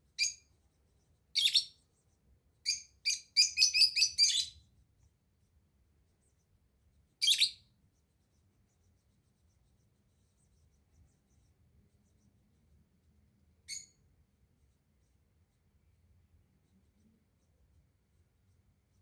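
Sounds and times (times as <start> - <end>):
small bird chirping: 0.2 - 0.5, 1.3 - 1.9, 2.6 - 4.6, 7.2 - 7.8, 13.6 - 14.0.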